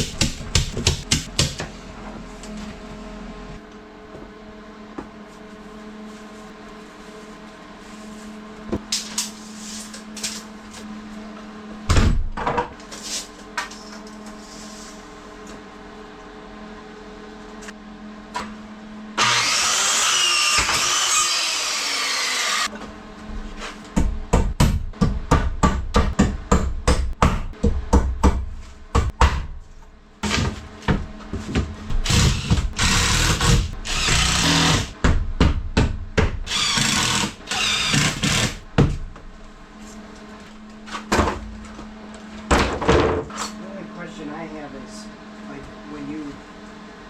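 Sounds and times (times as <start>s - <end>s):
knocks and taps on wood: 0.0s - 1.7s
power tool running: 19.2s - 22.7s, 31.9s - 35.0s, 36.5s - 38.6s.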